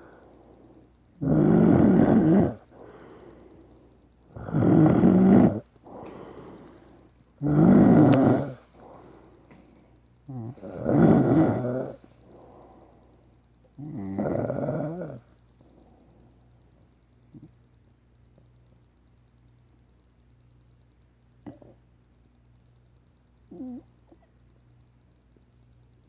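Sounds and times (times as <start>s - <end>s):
quiet breathing: 0.0s - 18.8s
man snoring loudly: 1.2s - 3.2s, 4.3s - 6.6s, 7.4s - 8.9s, 10.3s - 12.0s, 13.8s - 15.2s.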